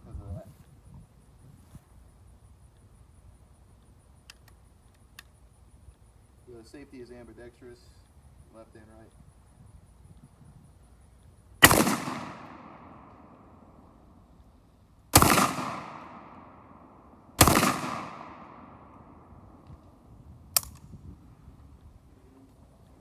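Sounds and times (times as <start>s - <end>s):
shotgun shots echoing: 11.6s - 13.8s, 15.1s - 19.3s.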